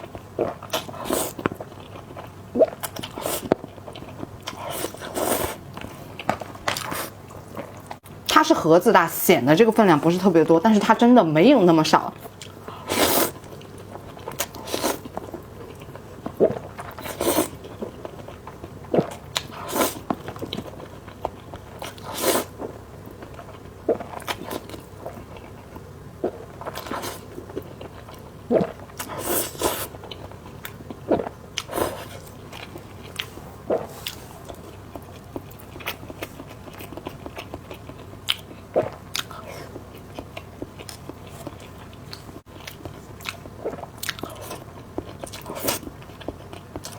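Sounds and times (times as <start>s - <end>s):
person chewing noodles: 0.0s - 8.0s, 12.2s - 46.9s.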